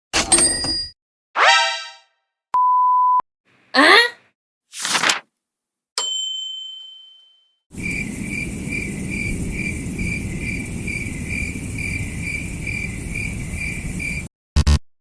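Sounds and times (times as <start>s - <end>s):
cricket chirping: 7.7s - 14.3s.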